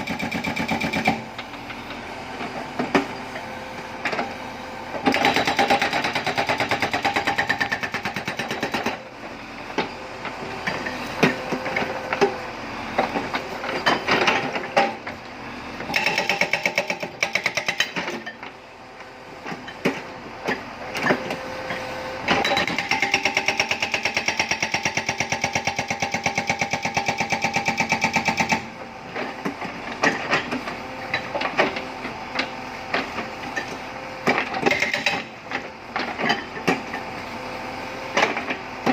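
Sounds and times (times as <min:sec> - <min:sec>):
hydraulic rock breaker hammering: 0:00.0 - 0:01.6, 0:05.0 - 0:09.0, 0:15.9 - 0:18.4, 0:22.3 - 0:31.9, 0:33.0 - 0:37.1.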